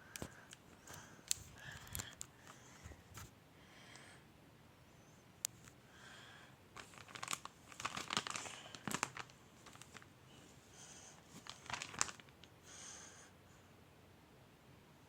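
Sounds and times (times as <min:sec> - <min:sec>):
crinkling and crackling handling: 0:00.1 - 0:03.3, 0:06.7 - 0:12.6.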